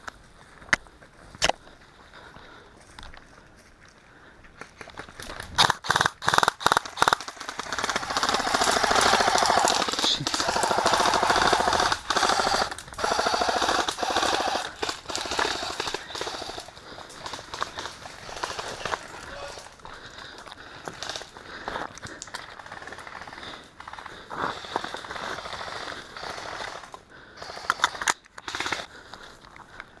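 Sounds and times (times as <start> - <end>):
airsoft rifle firing bursts: 5.6 - 19.7, 22.4 - 28.9.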